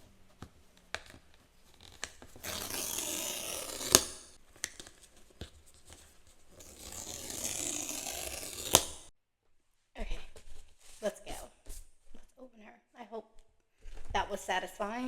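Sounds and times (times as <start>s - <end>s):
packaging tearing: 1.8s - 4.9s, 6.6s - 9.1s.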